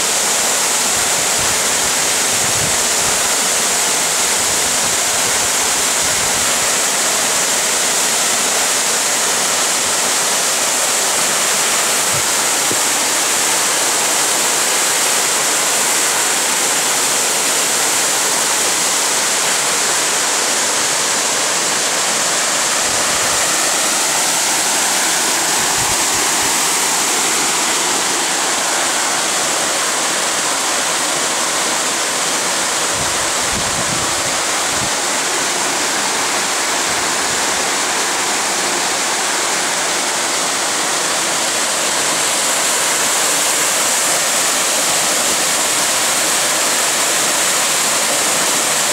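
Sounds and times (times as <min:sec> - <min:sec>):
waterfall rushing: 0:00.0 - 0:48.9.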